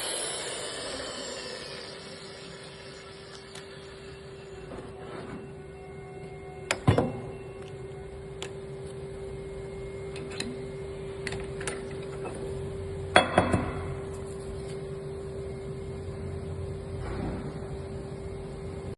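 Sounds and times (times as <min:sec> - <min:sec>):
motor hum: 0:00.0 - 0:14.3.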